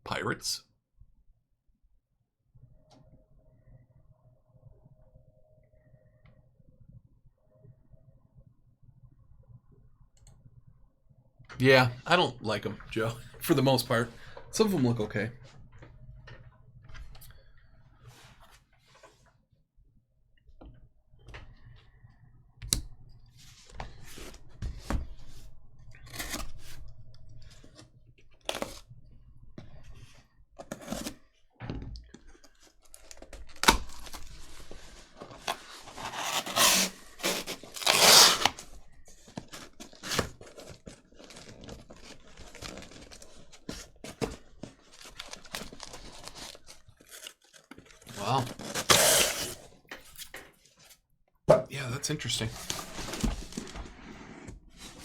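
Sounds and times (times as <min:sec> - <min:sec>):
packaging rustling and crinkling: 0:32.1 - 0:50.9, 0:52.4 - 0:55.0
packaging tearing: 0:32.9 - 0:38.8, 0:39.4 - 0:49.8.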